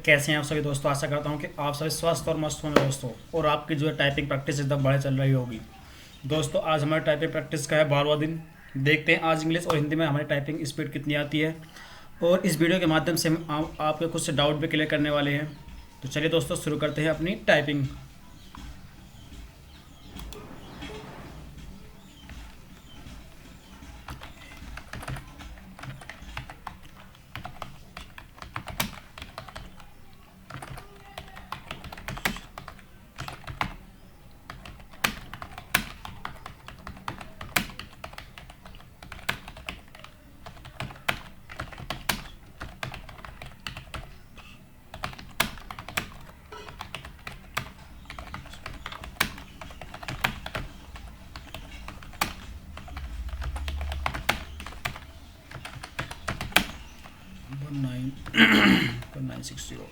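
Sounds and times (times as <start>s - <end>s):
typing on keyboard: 22.1s - 57.6s.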